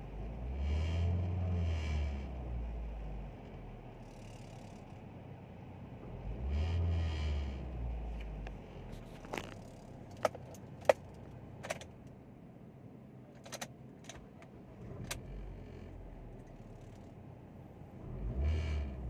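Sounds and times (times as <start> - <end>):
car engine revving: 18.0 - 19.0.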